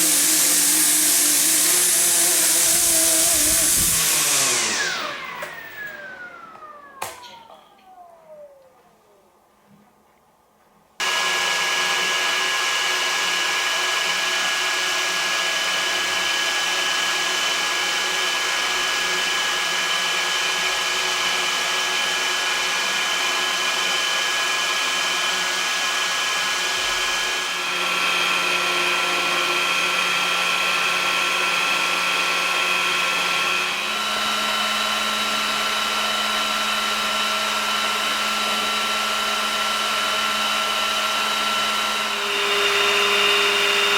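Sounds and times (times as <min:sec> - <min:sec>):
model helicopter rotors whining: 0:00.0 - 0:08.8, 0:33.6 - 0:43.9.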